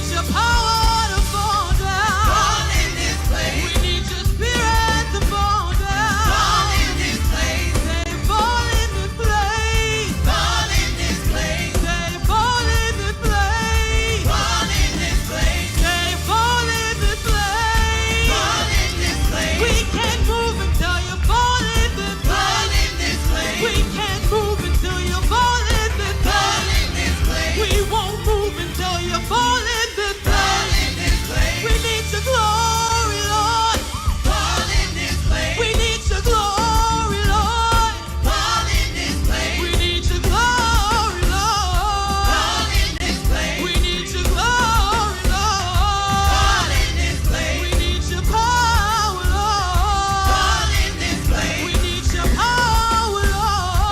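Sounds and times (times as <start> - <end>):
bass and drum beat: 0.0 - 53.9
lead and group singing: 0.0 - 53.9.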